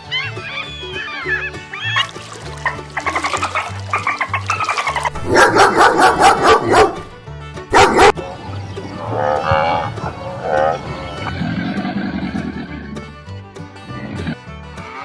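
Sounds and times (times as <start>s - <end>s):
drawn-out animal calls: 0.0s - 6.9s, 8.3s - 13.1s, 13.8s - 15.0s
light background music: 0.0s - 15.0s
dog barking rapidly: 5.0s - 7.1s, 7.7s - 8.2s
cattle mooing: 8.9s - 13.1s.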